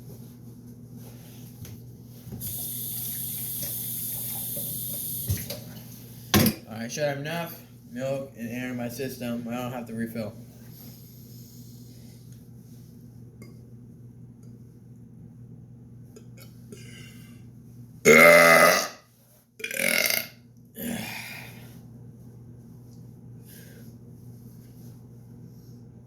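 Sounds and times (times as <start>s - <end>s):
loud burps: 18.0s - 21.1s.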